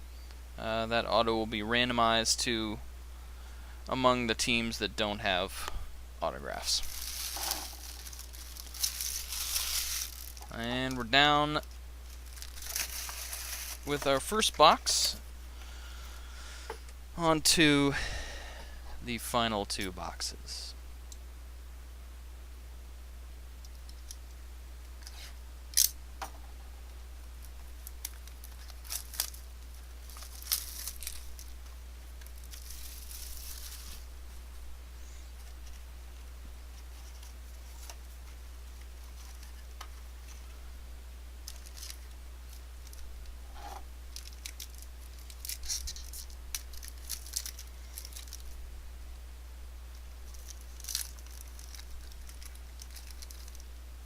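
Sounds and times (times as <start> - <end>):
low steady hum: 0.0 - 54.0
card packaging tearing and crinkling: 6.8 - 10.5, 12.0 - 14.8, 27.9 - 31.6, 32.2 - 34.1, 41.4 - 43.0, 44.1 - 48.5, 50.2 - 53.6.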